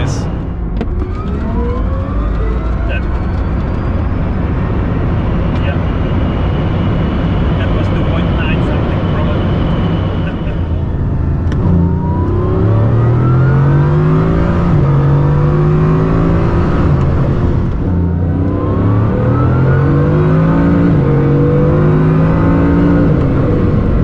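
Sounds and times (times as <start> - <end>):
road and wind noise: 0.0 - 24.0
electric motor whine rising: 0.9 - 4.8, 9.2 - 23.3.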